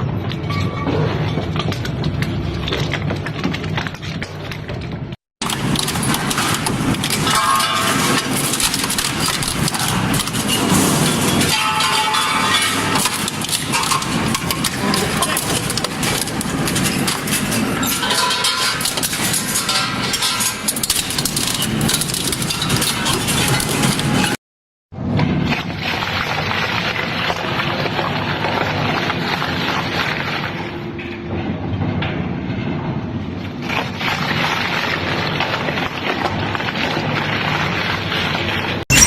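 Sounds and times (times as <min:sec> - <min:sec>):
shredding machine grinding: 0:05.4 - 0:24.4.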